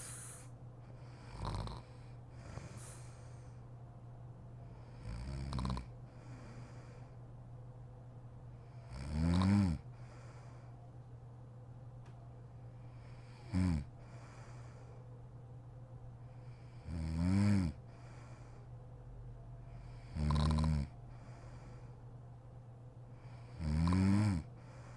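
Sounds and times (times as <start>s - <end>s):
woman snoring: 0.0s - 0.5s, 1.2s - 3.2s, 5.0s - 5.9s, 8.9s - 9.8s, 13.4s - 13.9s, 16.8s - 17.8s, 19.9s - 21.0s, 23.4s - 24.5s
steady low hum: 0.0s - 24.9s.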